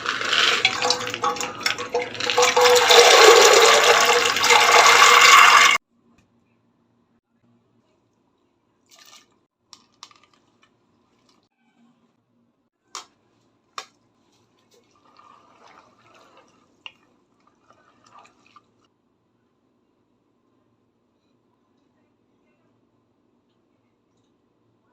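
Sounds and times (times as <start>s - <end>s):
utensils clicking and knocking: 0.0s - 5.8s.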